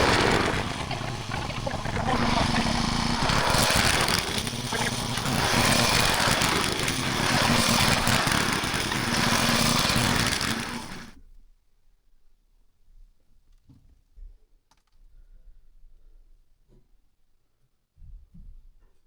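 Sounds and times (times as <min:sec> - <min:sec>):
small gasoline engine running: 0:00.0 - 0:11.2.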